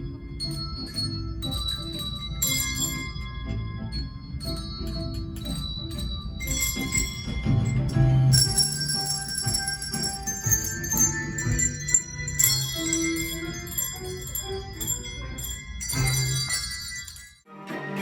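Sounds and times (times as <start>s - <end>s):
handbell choir playing: 0.0s - 18.0s.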